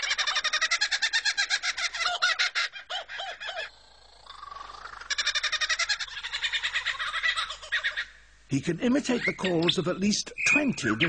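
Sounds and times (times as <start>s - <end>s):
kookaburra laughing call: 0.0s - 3.7s, 4.3s - 8.2s, 9.0s - 9.9s.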